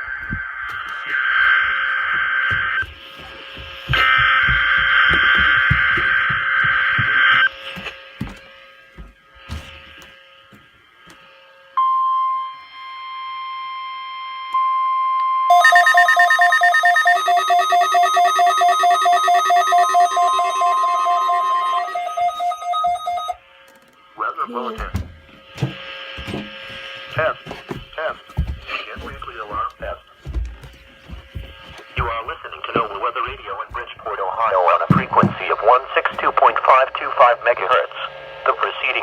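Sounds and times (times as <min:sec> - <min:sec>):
pulsing electronic alarm: 0:00.0 - 0:07.8, 0:11.8 - 0:23.6
steady warning alarm tone: 0:00.0 - 0:10.1, 0:11.7 - 0:23.6, 0:24.2 - 0:38.6
buzzy digital data tones: 0:15.5 - 0:23.6.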